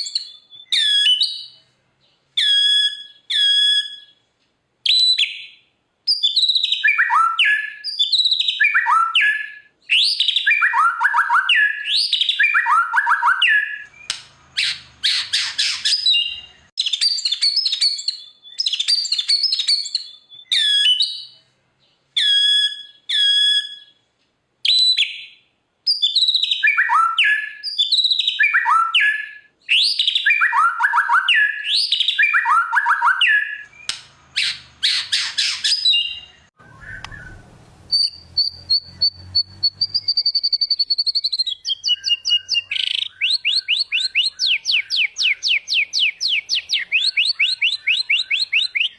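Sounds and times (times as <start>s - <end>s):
bird whistled song: 0.0s - 4.2s, 4.8s - 48.9s
harsh rasping bird calls: 6.4s - 21.5s, 28.2s - 48.9s.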